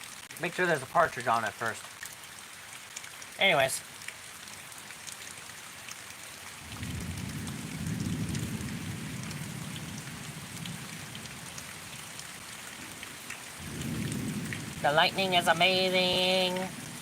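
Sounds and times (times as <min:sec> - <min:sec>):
steady rain: 0:00.0 - 0:17.0
thunder rumble: 0:06.6 - 0:11.6, 0:13.6 - 0:17.0.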